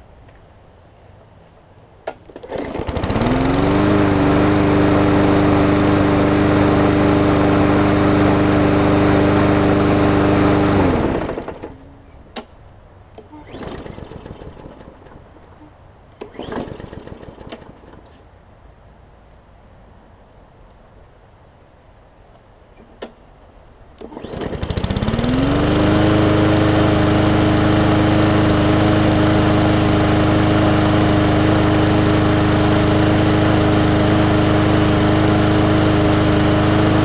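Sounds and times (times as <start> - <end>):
lawn mower engine running: 2.2 - 11.9, 13.2 - 18.1, 24.0 - 37.0.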